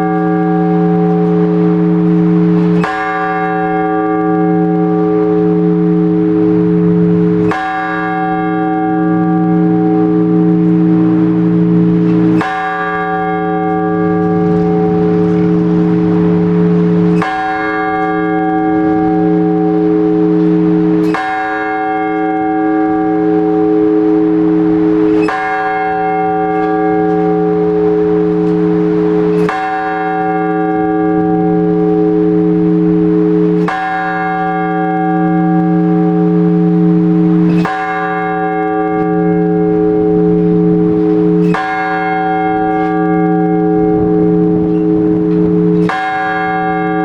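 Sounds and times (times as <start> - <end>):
large church bell strokes: 0.0 - 47.0.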